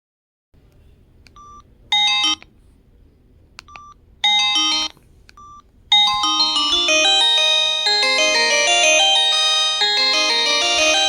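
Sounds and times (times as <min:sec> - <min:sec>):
phone key beeps: 0:01.4 - 0:02.5, 0:03.7 - 0:07.0
polyphonic ringtone snippet: 0:05.9 - 0:11.0.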